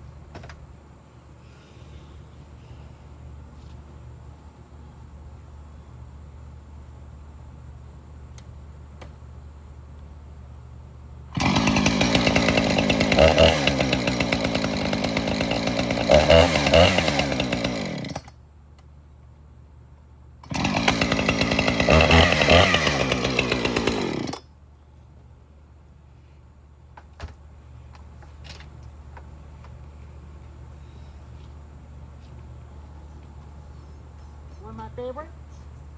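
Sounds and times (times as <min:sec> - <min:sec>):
small gas engine revving: 0:11.4 - 0:18.3, 0:20.4 - 0:24.4.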